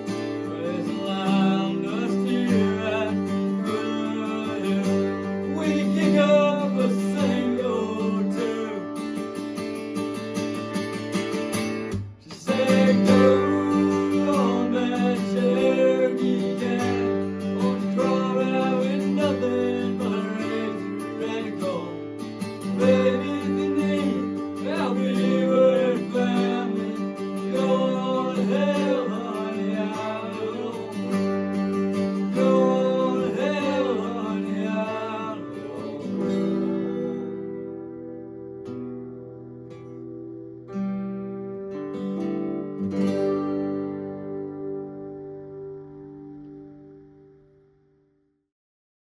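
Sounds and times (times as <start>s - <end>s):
person singing country song: 0.0s - 9.4s, 12.3s - 38.2s
acoustic guitar strumming: 0.0s - 48.0s.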